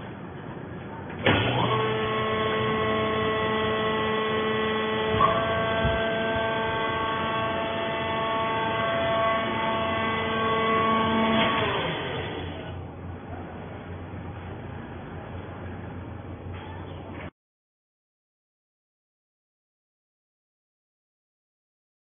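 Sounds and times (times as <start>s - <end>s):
hydraulic pump motor whining and humming: 0.0s - 12.9s
motor knock: 1.2s - 12.8s.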